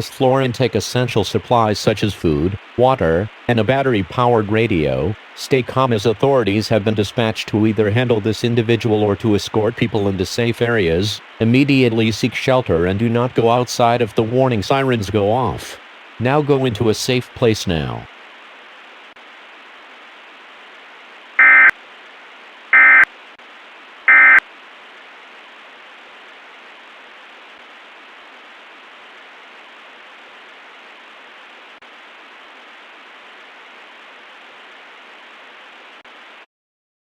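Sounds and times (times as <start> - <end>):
radio static hiss: 0.0 - 36.5
data tone bursts: 21.4 - 21.7, 22.8 - 23.0, 24.1 - 24.4.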